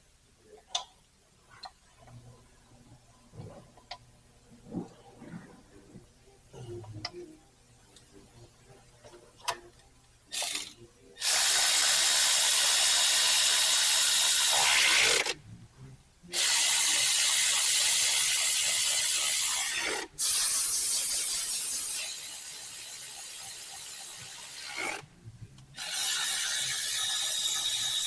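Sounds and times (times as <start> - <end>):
electric ratchet running: 10.3 - 15.4, 16.3 - 25.0, 25.8 - 28.0.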